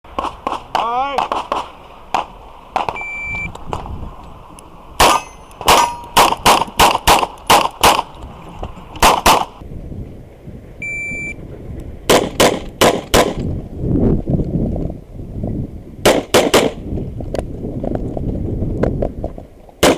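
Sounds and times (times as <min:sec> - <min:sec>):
rapid pistol fire: 0:00.2 - 0:03.0, 0:05.0 - 0:08.1, 0:12.1 - 0:13.4, 0:16.0 - 0:16.8
shot timer beeps: 0:02.9 - 0:03.5, 0:10.8 - 0:11.4.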